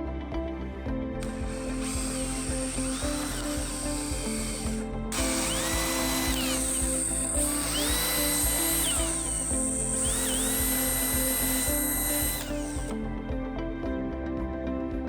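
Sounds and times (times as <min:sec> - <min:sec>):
background music: 0:00.0 - 0:15.0
electric drill drilling: 0:01.2 - 0:13.0.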